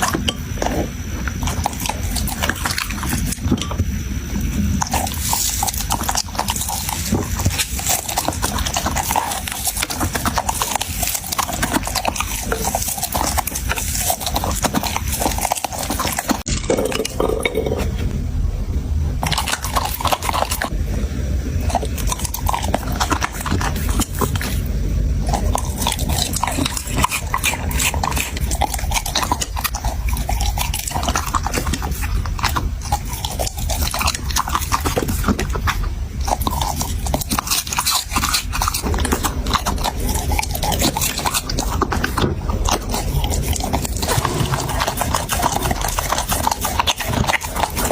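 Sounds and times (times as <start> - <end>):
dog crunching chicken: 0.0 - 17.4, 19.2 - 20.8, 21.6 - 47.9.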